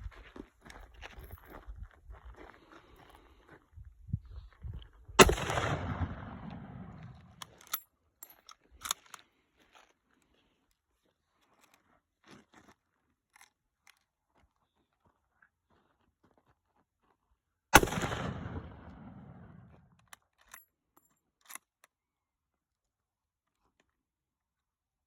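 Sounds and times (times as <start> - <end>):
rifle shot with echo: 5.2 - 7.4, 17.8 - 19.7.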